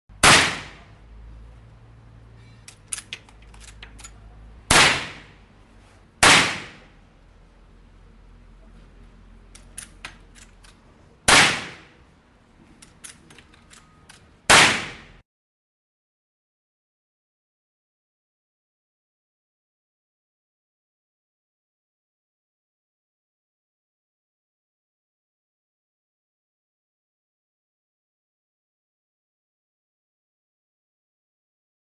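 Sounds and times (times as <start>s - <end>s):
rifle shots: 0.2s - 0.9s, 4.7s - 5.4s, 6.2s - 6.9s, 11.3s - 11.9s, 14.5s - 15.2s.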